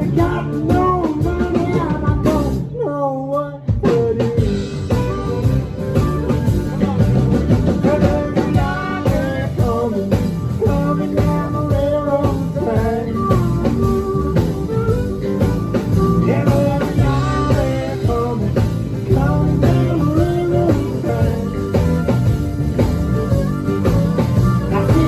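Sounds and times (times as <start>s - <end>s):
drums and bass beat: 0.0s - 25.0s
live country band playing: 0.0s - 25.0s
pitch-bending lead melody: 4.4s - 25.0s.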